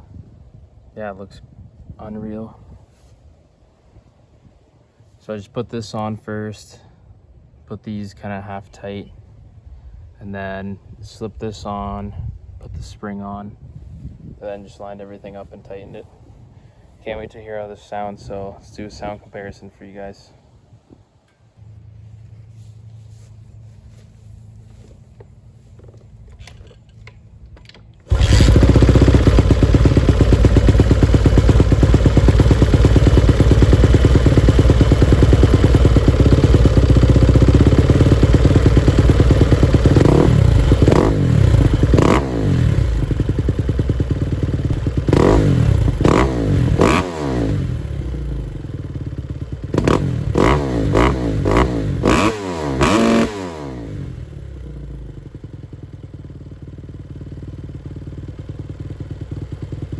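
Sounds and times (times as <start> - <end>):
dirt bike engine revving: 28.1 - 55.4.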